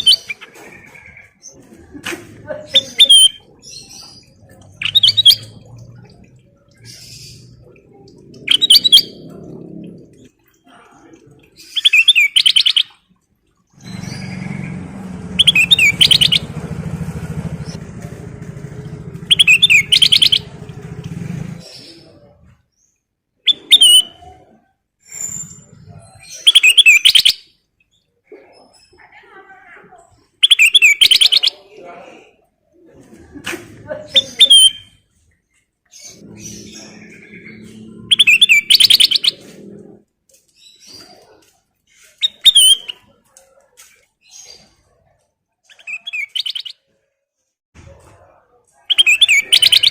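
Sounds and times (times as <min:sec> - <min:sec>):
songbird chirping: 0:00.0 - 0:01.7, 0:02.5 - 0:24.6, 0:30.0 - 0:33.0, 0:33.9 - 0:46.9
low rumble: 0:13.8 - 0:22.6.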